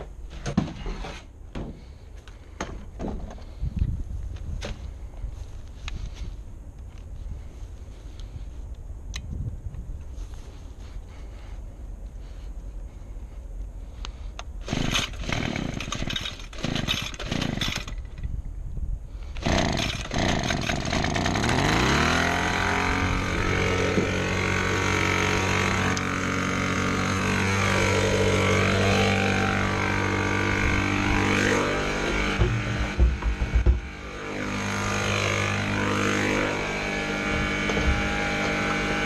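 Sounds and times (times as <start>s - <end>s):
starter rope pulls: 14.6s - 18.2s, 19.4s - 39.0s
small two-stroke engine running: 14.7s - 18.0s, 19.4s - 39.0s.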